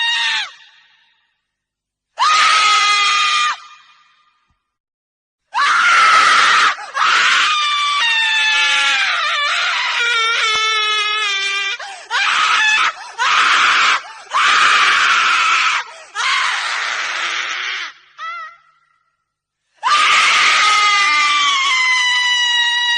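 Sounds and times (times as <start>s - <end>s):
woman screaming: 2.2s - 3.9s, 5.6s - 18.8s, 19.8s - 22.9s.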